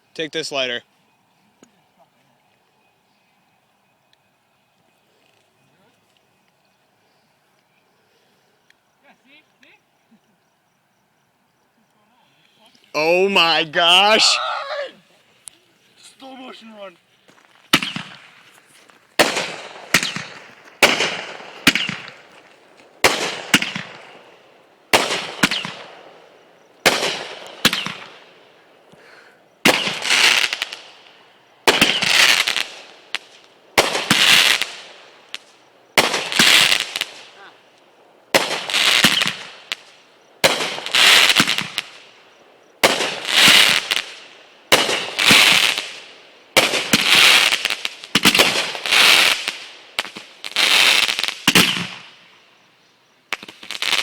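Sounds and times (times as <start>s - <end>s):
fireworks cracking and crackling: 12.9s - 14.4s, 16.0s - 52.3s, 53.3s - 54.0s.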